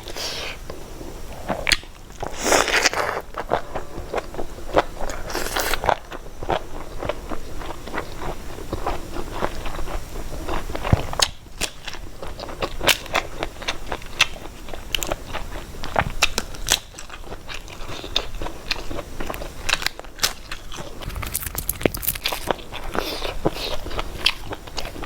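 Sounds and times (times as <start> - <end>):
crunchy bites and chewing: 1.4 - 25.0.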